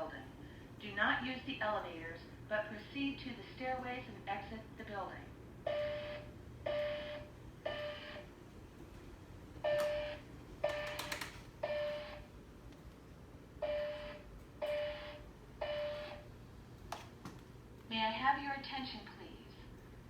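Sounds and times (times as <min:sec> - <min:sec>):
fire alarm alert tones: 0:05.7 - 0:08.3, 0:09.6 - 0:12.3, 0:13.6 - 0:16.2.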